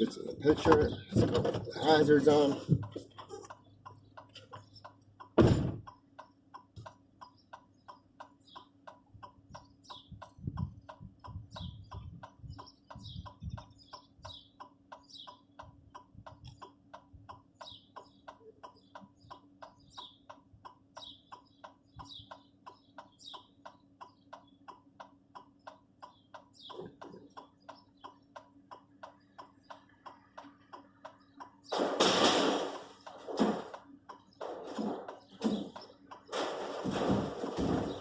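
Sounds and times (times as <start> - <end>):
steady low hum: 0.0 - 38.0
hazard flasher ticking: 1.8 - 31.8, 32.6 - 36.7
low thumps: 5.4 - 5.9.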